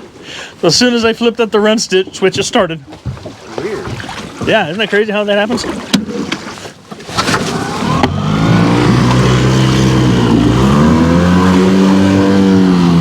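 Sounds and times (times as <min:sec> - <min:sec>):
outboard motor revving: 0:03.0 - 0:13.0.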